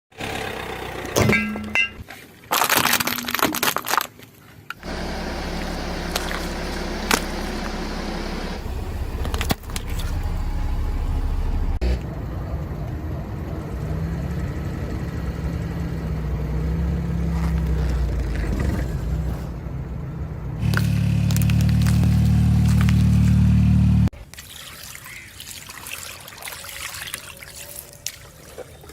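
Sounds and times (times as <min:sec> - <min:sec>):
car engine and tyre rumble: 0:00.2 - 0:02.3, 0:04.2 - 0:24.1
lamps cracking under car wheels: 0:20.6 - 0:24.1.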